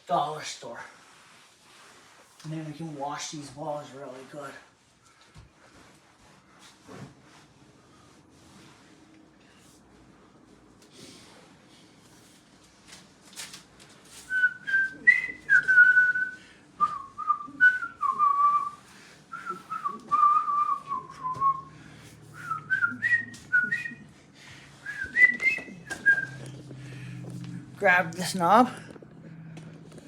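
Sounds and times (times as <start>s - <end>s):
light clicks and rustles: 12.1s - 14.3s
person whistling a tune: 14.3s - 24.1s, 24.8s - 26.5s.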